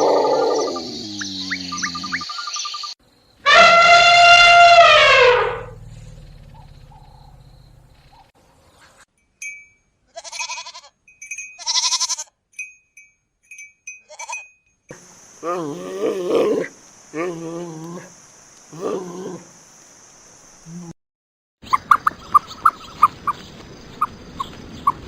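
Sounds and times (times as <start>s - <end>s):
long pitched animal call: 0.0s - 2.4s, 3.5s - 7.5s, 15.4s - 18.1s.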